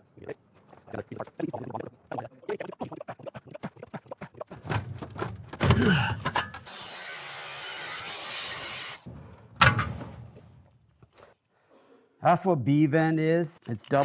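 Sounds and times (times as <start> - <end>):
objects knocking and clattering: 4.5 - 6.6.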